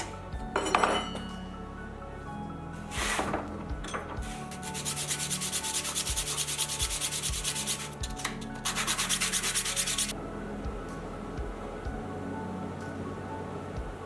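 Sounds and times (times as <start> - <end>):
hand sanding strokes: 4.4 - 8.0, 8.6 - 10.1.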